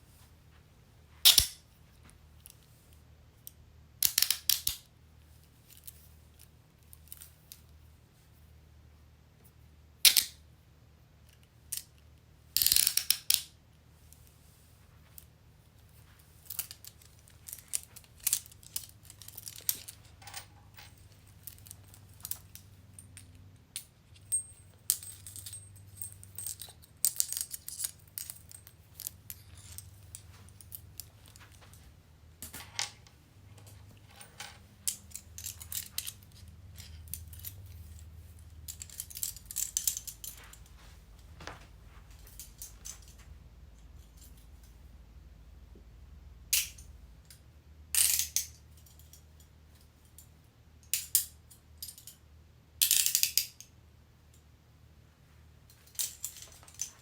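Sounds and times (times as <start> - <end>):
handcuffs ratcheting clicks: 1.3 - 1.6, 4.0 - 4.8, 34.8 - 37.8, 38.7 - 40.6
light metallic clicks and rattles: 16.2 - 44.8, 55.7 - 57.0.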